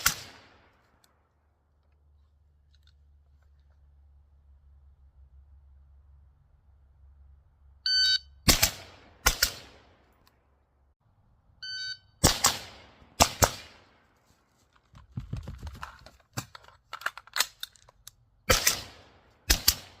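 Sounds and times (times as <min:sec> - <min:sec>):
rifle shots: 0:00.0 - 0:00.7, 0:08.4 - 0:10.0, 0:12.2 - 0:14.0, 0:18.5 - 0:20.0
shot timer beep: 0:07.9 - 0:08.4, 0:11.6 - 0:12.2.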